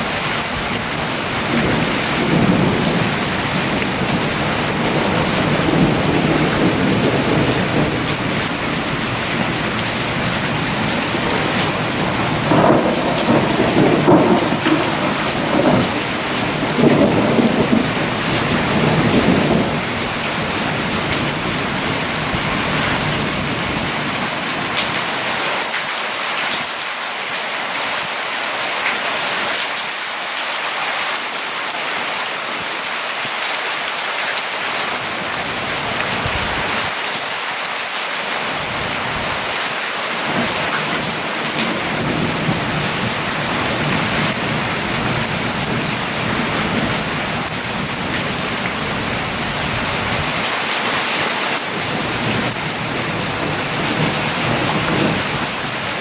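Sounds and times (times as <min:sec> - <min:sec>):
steady rain falling: 0:00.0 - 0:56.0
thunder rumbling: 0:00.6 - 0:24.7, 0:40.3 - 0:50.7, 0:51.5 - 0:56.0.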